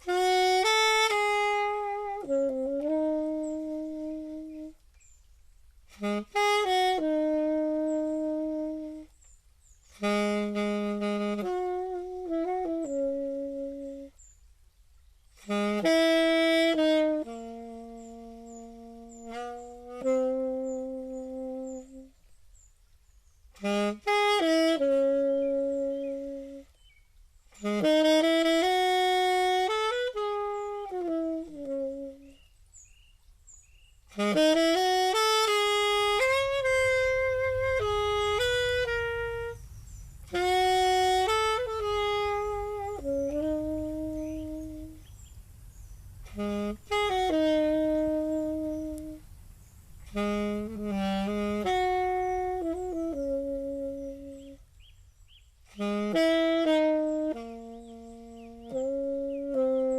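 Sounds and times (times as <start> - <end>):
wind instrument slow melody: 0.0 - 4.8, 5.9 - 9.1, 9.9 - 14.2, 15.4 - 22.2, 23.6 - 26.8, 27.5 - 32.6, 34.0 - 59.9.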